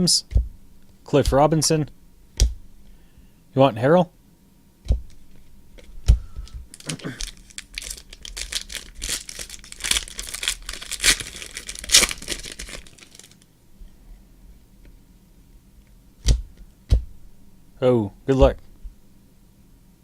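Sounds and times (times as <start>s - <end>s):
foil wrapper tearing and crinkling: 6.7s - 13.4s.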